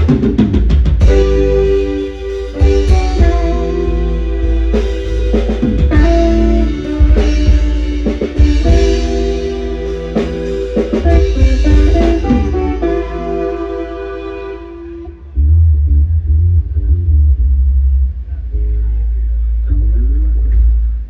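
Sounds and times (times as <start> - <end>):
live instrumental band: 0.0 - 15.2.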